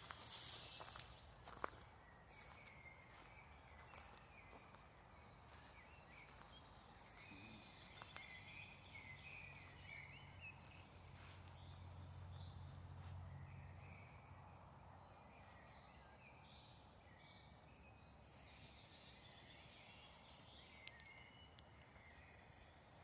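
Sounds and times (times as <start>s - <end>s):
bird chirps and calls: 2.3s - 12.5s.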